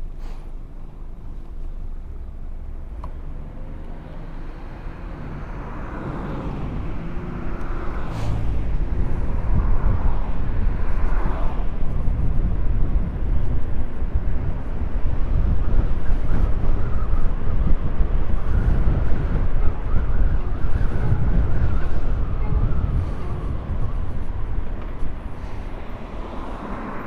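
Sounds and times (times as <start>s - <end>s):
road and traffic noise: 0.0s - 27.0s
passing whines: 4.1s - 11.7s
wind buffeting microphone: 4.2s - 27.0s.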